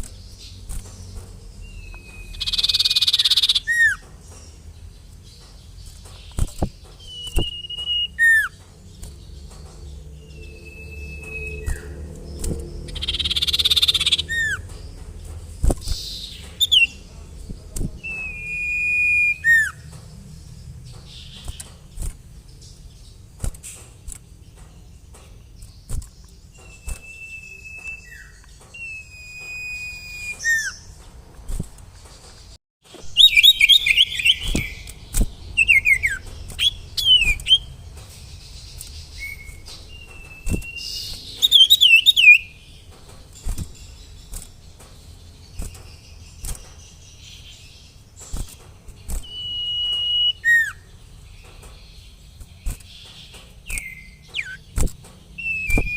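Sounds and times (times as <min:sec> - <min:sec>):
bird chattering trills: 0:00.0 - 0:20.0
songbird whistling: 0:01.6 - 0:04.0, 0:06.3 - 0:08.6, 0:10.3 - 0:14.6, 0:15.8 - 0:17.0, 0:18.0 - 0:19.8, 0:26.5 - 0:30.9, 0:33.0 - 0:35.0, 0:35.6 - 0:37.7, 0:39.1 - 0:42.6, 0:49.2 - 0:50.9, 0:53.7 - 0:54.6, 0:55.4 - 0:55.9.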